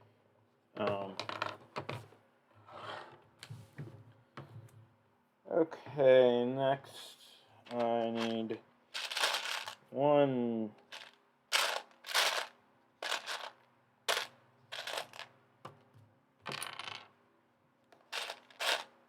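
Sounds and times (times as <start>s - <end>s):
plastic toy bricks clattering: 7.7s - 8.4s, 9.0s - 9.8s, 10.8s - 15.3s, 16.5s - 17.1s, 18.0s - 19.0s.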